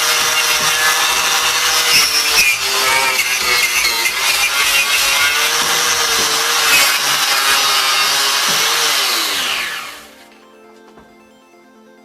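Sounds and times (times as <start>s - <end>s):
power tool running and winding down: 0.0s - 10.3s.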